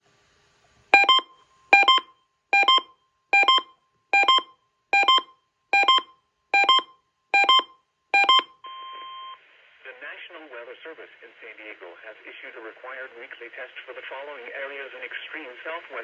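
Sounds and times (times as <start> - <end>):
electronic two-note chirp: 1.8 - 2.0.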